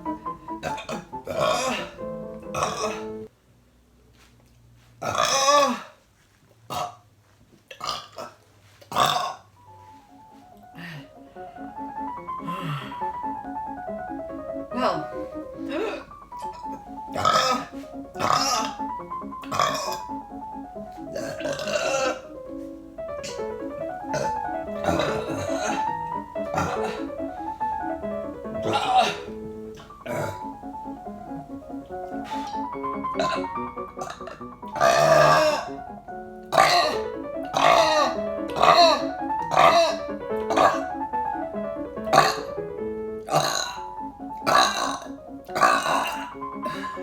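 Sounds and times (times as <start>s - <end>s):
light keyboard music: 0.0s - 3.3s, 9.5s - 47.0s
woman burping: 0.6s - 3.3s, 5.0s - 6.0s, 7.7s - 9.5s, 10.7s - 11.2s, 12.4s - 13.2s, 14.7s - 20.2s, 21.1s - 22.3s, 23.2s - 23.5s, 24.1s - 27.3s, 28.5s - 30.6s, 32.3s - 35.8s, 36.5s - 41.0s, 42.1s - 42.6s, 43.2s - 47.0s.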